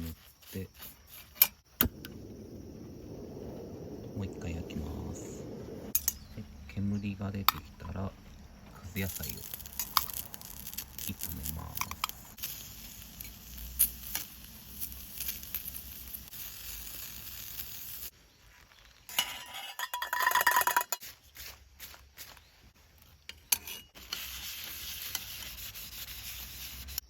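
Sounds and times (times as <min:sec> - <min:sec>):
vegetables sizzling on grill plate: 0:09.0 - 0:18.1
scraping clatter with ringing tone: 0:19.1 - 0:21.0
utensil scraping metal: 0:23.5 - 0:27.0.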